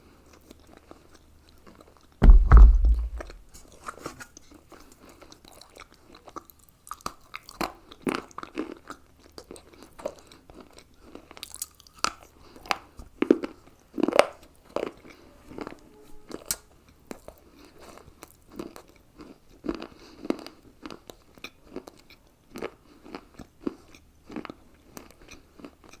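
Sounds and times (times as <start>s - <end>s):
person crunching hard food: 5.2s - 15.2s.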